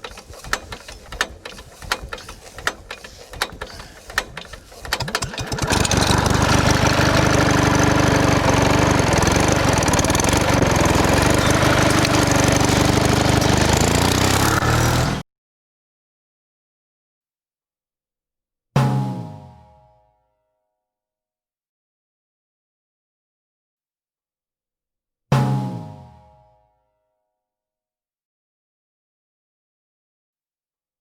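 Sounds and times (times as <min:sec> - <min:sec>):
clicks and knocks: 0:00.0 - 0:06.0
motor running loudly: 0:00.0 - 0:15.2.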